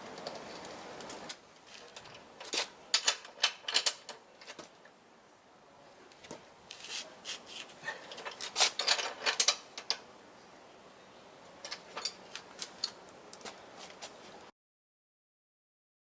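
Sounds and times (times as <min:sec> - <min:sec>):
hand tools clicking and clinking: 0:00.2 - 0:04.7, 0:06.8 - 0:10.0, 0:11.6 - 0:14.3.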